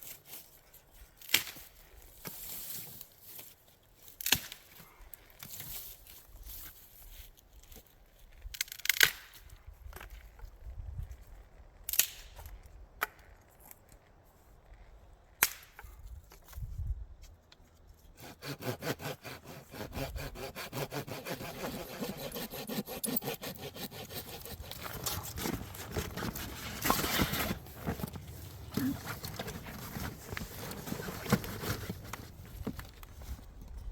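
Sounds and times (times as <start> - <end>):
hand saw cutting wood: 18.0 - 28.1.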